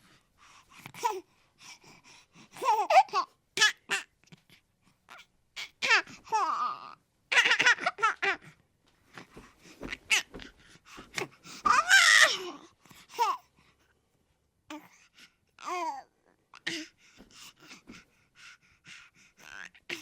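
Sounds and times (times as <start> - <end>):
baby cooing and babbling: 0.9 - 1.3, 2.6 - 4.4, 5.1 - 8.6, 9.8 - 10.5, 11.1 - 13.5, 15.6 - 16.9
baby laughing: 5.6 - 8.5.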